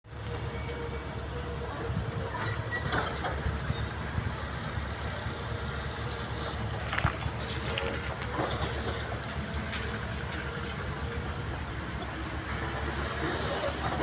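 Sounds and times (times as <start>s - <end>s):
heavy engine rumbling: 0.1s - 14.0s.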